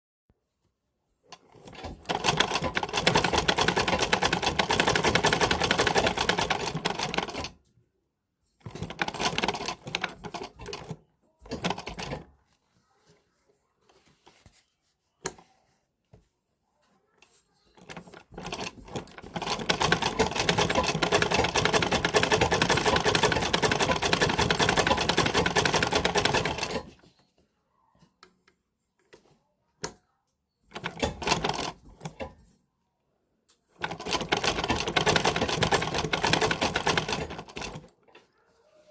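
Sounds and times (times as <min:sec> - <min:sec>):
sewing machine ticking: 0:01.3 - 0:07.6, 0:08.6 - 0:12.3, 0:17.8 - 0:26.9, 0:30.7 - 0:32.4, 0:33.8 - 0:37.9.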